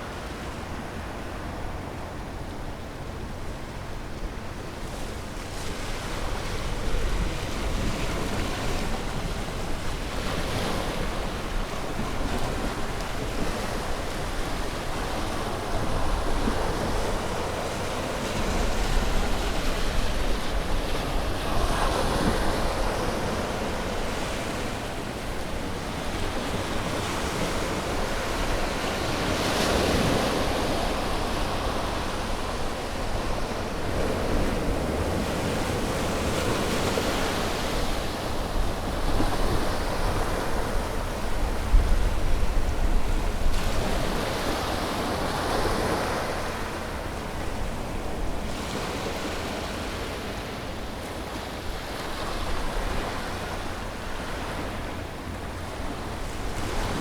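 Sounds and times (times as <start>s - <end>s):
wind on microphone: 25.6s - 49.0s.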